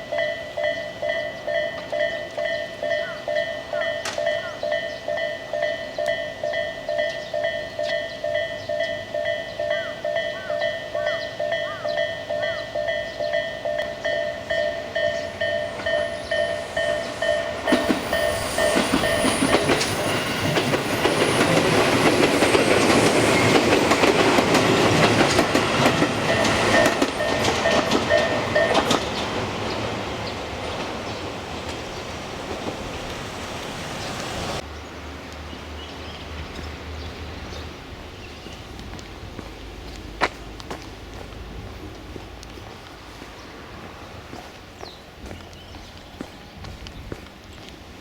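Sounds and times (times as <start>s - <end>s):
level crossing alarm ringing: 0.0s - 30.3s
electric train passing: 0.0s - 48.0s.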